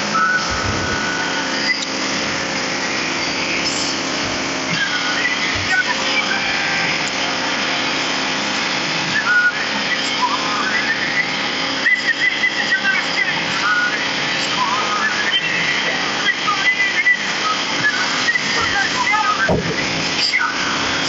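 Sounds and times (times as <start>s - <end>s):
sawmill running: 0.0s - 21.0s
high chirps and whistles: 0.1s - 2.0s.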